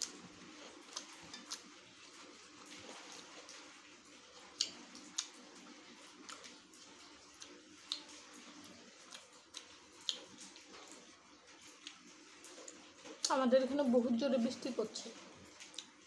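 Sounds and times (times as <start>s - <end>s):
person eating wet clicks: 0.0s - 1.8s, 4.3s - 13.4s, 15.4s - 16.0s.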